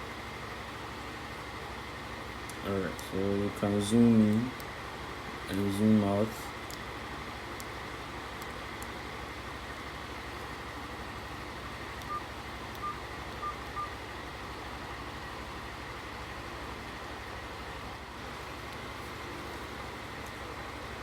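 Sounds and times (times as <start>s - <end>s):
smartwatch beeps: 12.0s - 14.0s.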